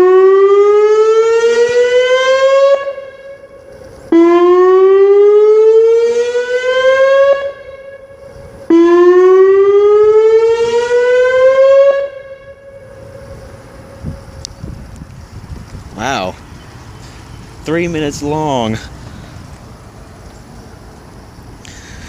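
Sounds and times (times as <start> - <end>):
warning siren rising tone: 0.0 - 14.5
faint steady siren tone: 0.0 - 15.5.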